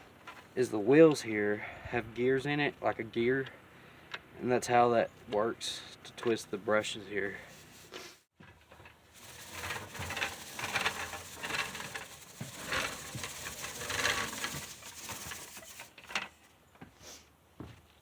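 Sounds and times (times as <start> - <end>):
push broom brushes scratching ground: 6.8 - 8.2, 8.8 - 16.4.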